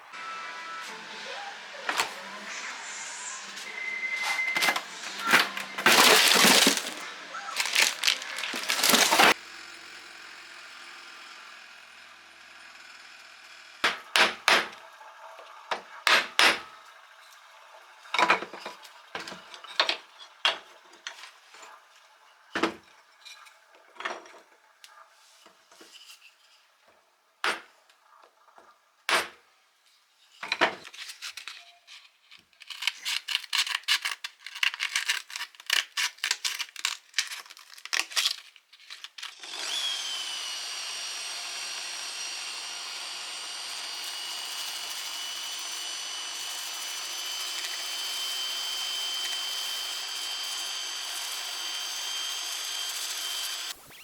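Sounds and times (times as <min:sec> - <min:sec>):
power tool running: 0:00.1 - 0:14.8, 0:39.2 - 0:54.0.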